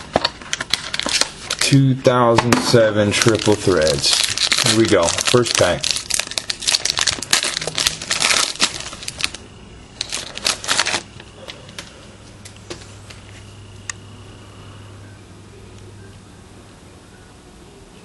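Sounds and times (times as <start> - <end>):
card pack wrapper tearing and crinkling: 0.0 - 1.9, 2.7 - 9.4, 10.0 - 11.3.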